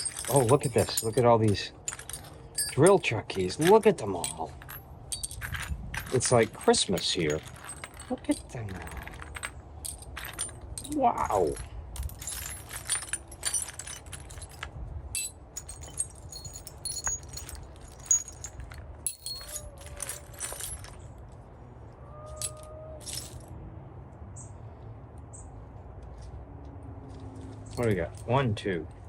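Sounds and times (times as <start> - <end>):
metal keys clinking and jangling: 0.0 - 21.0, 22.3 - 23.4.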